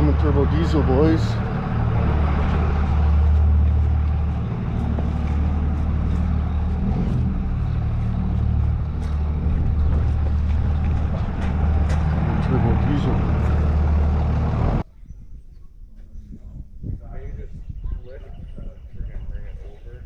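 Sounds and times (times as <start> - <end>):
diesel truck engine running: 0.0 - 14.8.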